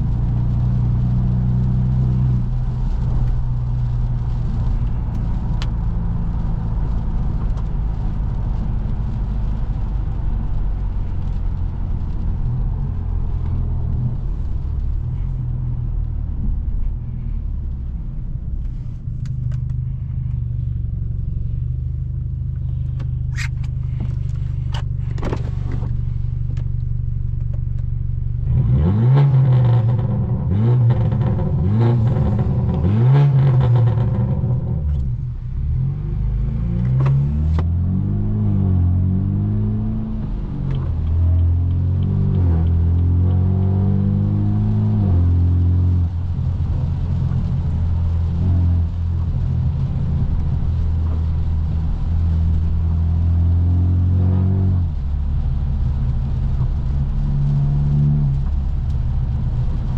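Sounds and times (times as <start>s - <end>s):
car exhaust drone: 0.0s - 59.9s
car accelerating through gears: 28.4s - 46.3s.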